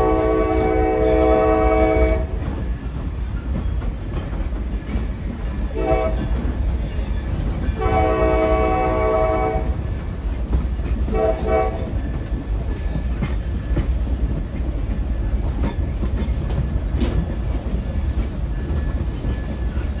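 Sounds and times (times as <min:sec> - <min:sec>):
train horn: 0:00.0 - 0:02.5, 0:05.7 - 0:06.5, 0:07.7 - 0:09.9, 0:11.0 - 0:12.1
train rumbling: 0:00.0 - 0:20.0
wheels clicking on rails: 0:00.5 - 0:20.0.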